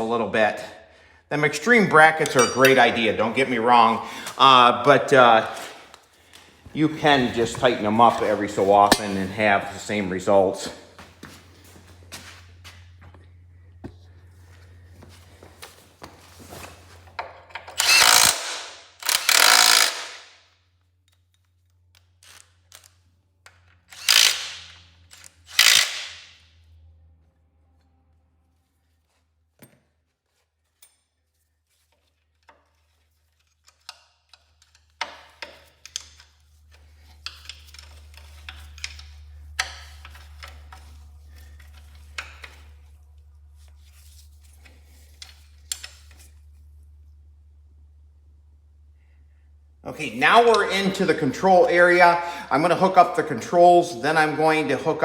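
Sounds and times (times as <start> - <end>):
hand tools clicking and tapping: 2.2 - 2.9
impact wrench bursts: 7.0 - 9.5, 17.6 - 20.4, 23.9 - 26.4.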